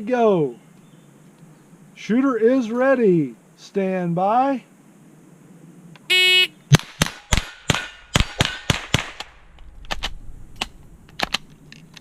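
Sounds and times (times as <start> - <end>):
rifle shots in rapid string: 6.8 - 9.3.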